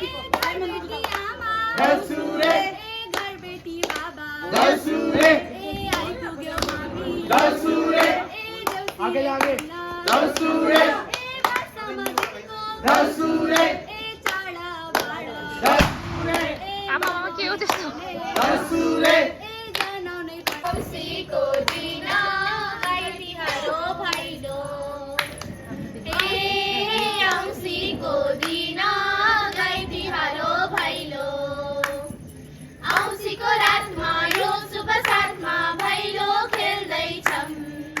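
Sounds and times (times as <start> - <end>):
hand claps: 0.0 - 24.4, 25.1 - 31.2, 31.8 - 32.2, 32.8 - 38.0
group singing: 0.0 - 38.0.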